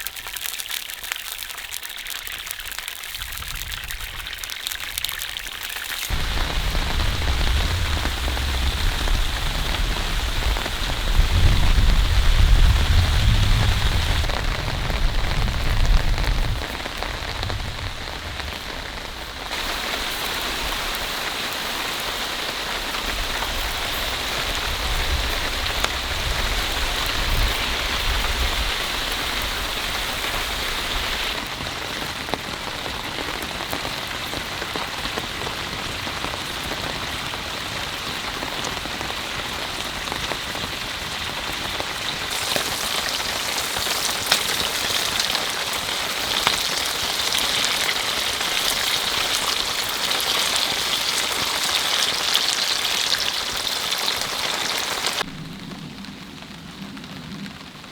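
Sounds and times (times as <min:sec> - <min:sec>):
heavy rain falling: 0:05.9 - 0:57.9
low rumble: 0:06.1 - 0:18.6.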